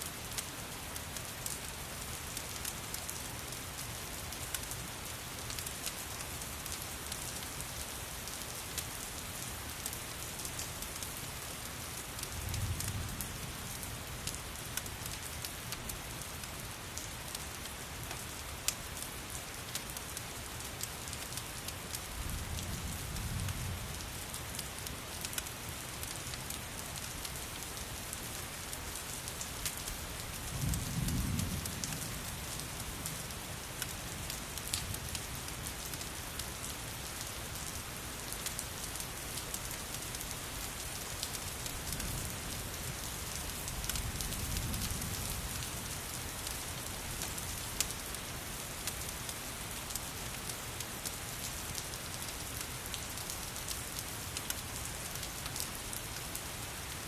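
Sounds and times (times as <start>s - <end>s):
steady rain: 0.0s - 57.0s
wood fire crackling: 24.0s - 56.4s.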